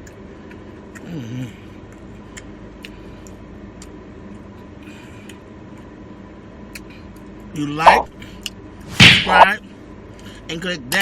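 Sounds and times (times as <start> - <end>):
chewing and mouth sounds: 0.0 - 5.9, 6.7 - 7.3
steady background hum: 0.0 - 11.0.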